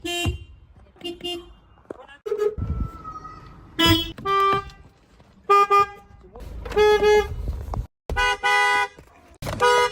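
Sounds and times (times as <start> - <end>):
car horns honking: 0.0 - 3.1, 3.8 - 7.5, 8.1 - 9.9.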